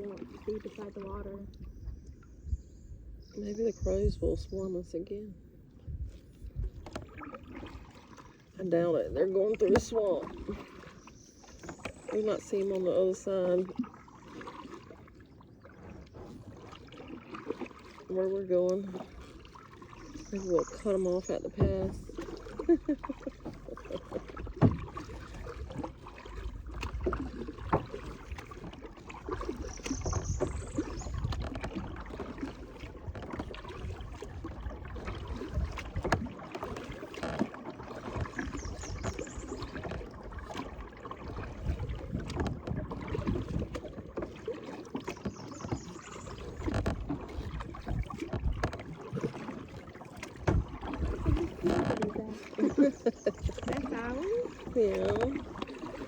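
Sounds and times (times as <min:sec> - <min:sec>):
wind rumble on microphone: 0:00.0 - 0:07.7, 0:20.0 - 0:37.4, 0:38.0 - 0:44.2, 0:45.3 - 0:48.9, 0:50.4 - 0:55.7
kayak paddles splashing: 0:00.0 - 0:56.0.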